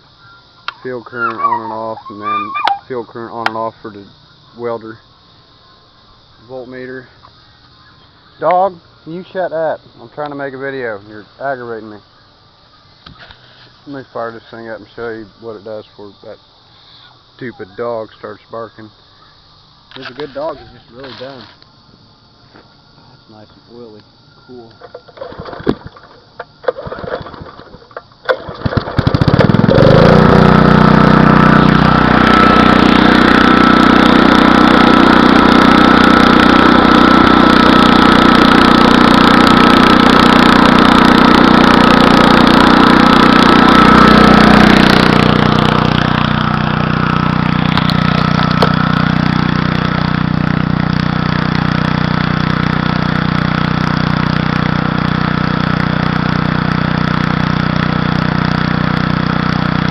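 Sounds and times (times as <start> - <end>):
small engine running: 0.0 - 4.9, 24.8 - 59.9
engine cranking: 25.2 - 31.0.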